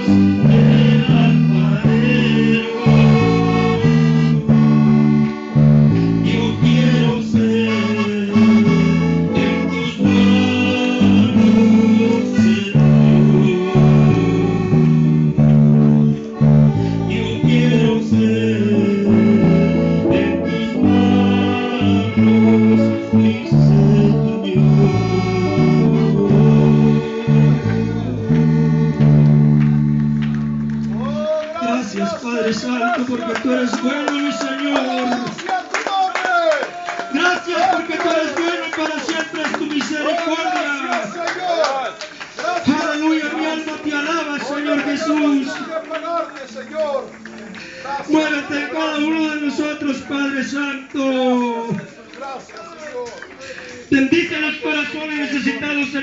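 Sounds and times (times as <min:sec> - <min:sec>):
bass guitar: 0:00.0 - 0:31.5
guitar playing chords: 0:00.0 - 0:31.5, 0:46.6 - 0:47.9.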